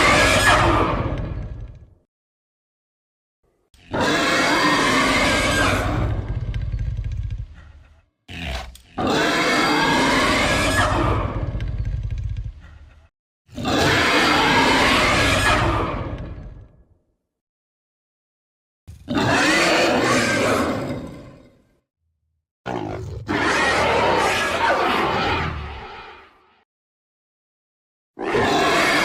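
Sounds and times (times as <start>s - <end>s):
monster roars: 0.0s - 1.6s, 3.8s - 6.5s, 8.3s - 11.6s, 13.5s - 16.7s, 19.0s - 21.6s, 22.7s - 26.3s, 28.2s - 29.0s.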